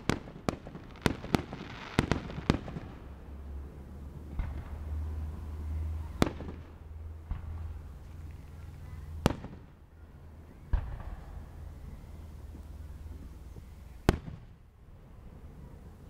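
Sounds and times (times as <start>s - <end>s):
loud firework bangs: 0.0s - 3.2s, 4.2s - 5.2s, 6.1s - 7.8s, 9.0s - 9.8s, 10.6s - 12.3s, 13.1s - 14.6s
softer firework bangs: 4.2s - 9.8s, 10.6s - 14.6s.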